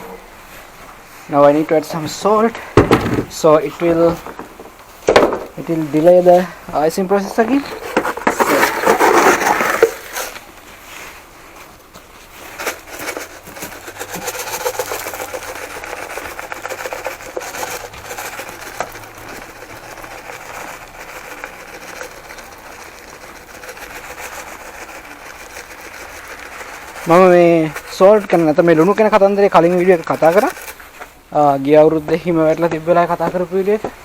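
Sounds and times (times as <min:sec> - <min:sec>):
salt grains rushing: 0:00.4 - 0:11.4, 0:12.2 - 0:31.6.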